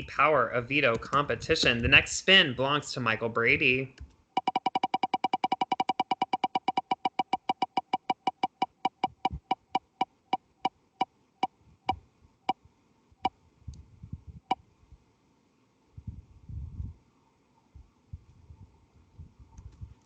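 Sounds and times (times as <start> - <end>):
spinning wheel ticking: 4.4 - 10.1.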